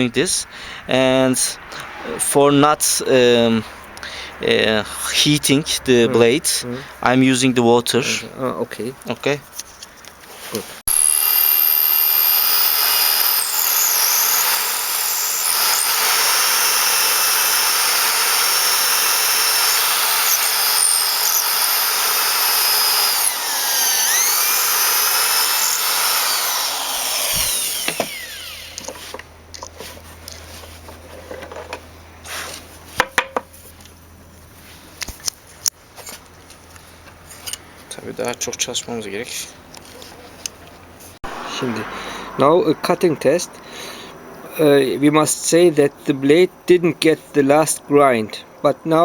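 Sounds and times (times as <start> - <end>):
power grinder grinding metal: 10.9 - 29.1.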